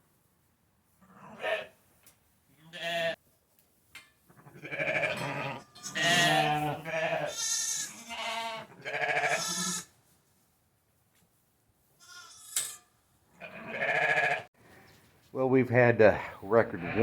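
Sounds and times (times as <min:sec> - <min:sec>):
sheep bleating: 0:01.0 - 0:01.7, 0:02.6 - 0:03.2, 0:04.3 - 0:09.9, 0:12.0 - 0:12.6, 0:13.4 - 0:14.5, 0:16.6 - 0:17.0.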